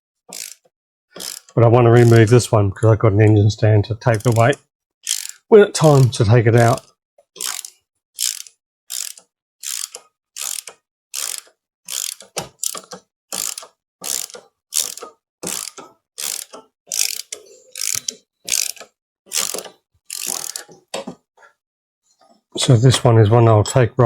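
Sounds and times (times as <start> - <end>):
ratchet wrench clicking: 0.3 - 0.6, 1.2 - 2.2, 4.1 - 20.7.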